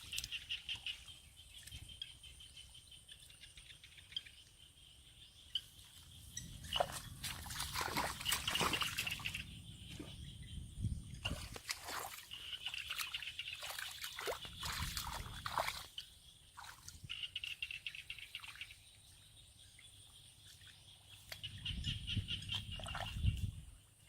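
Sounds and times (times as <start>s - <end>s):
water splashing and trickling: 0.0s - 2.0s, 5.9s - 10.3s, 11.0s - 18.9s, 20.3s - 24.0s.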